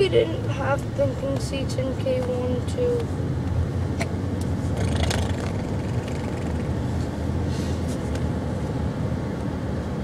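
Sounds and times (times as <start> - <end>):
car engine and road noise: 0.0 - 10.0
brief breathy hisses: 7.5 - 8.0.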